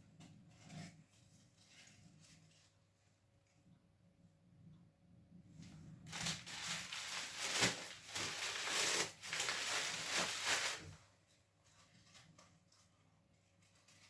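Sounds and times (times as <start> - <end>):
paper crumpling and tearing: 6.1 - 11.0.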